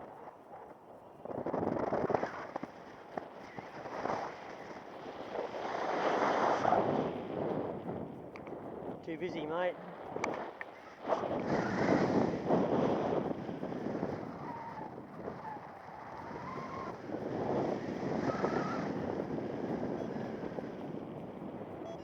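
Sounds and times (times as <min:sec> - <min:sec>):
wind rushing across microphone: 0:00.0 - 0:22.0
faint whistles: 0:19.9 - 0:20.3.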